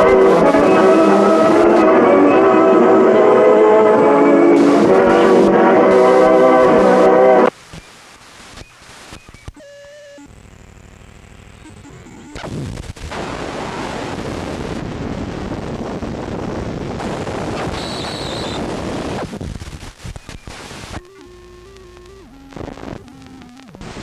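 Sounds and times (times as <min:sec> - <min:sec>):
low steady tones: 0:00.0 - 0:07.6
loud rushing static noise: 0:00.0 - 0:09.5, 0:10.3 - 0:21.0.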